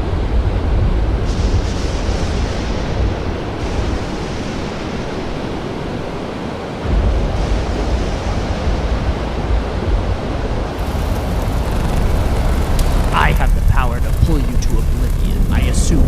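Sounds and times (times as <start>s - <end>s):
deep rumble: 0.0s - 5.7s, 6.8s - 16.0s
steady rushing noise: 0.0s - 16.0s.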